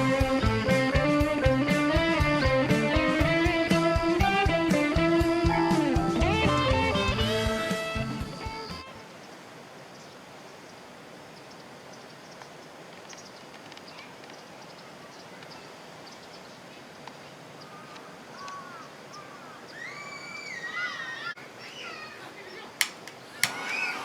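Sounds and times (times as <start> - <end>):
bird whistling: 19.7 - 22.0.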